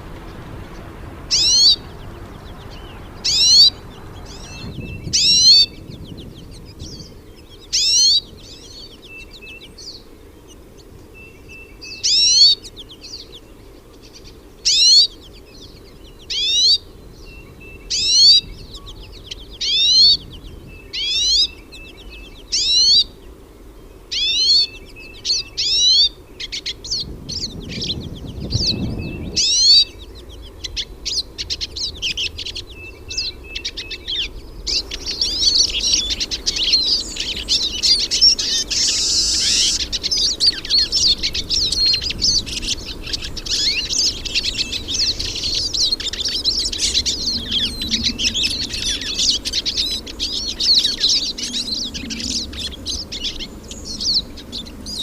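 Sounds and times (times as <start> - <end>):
low rumble: 0.0 - 7.4, 26.9 - 31.0
birds twittering: 0.0 - 55.0.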